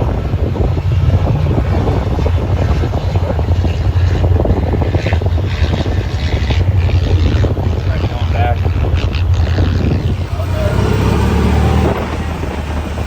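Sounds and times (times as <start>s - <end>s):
off-road vehicle engine running: 0.0s - 13.0s
rough choppy noise: 9.8s - 13.0s.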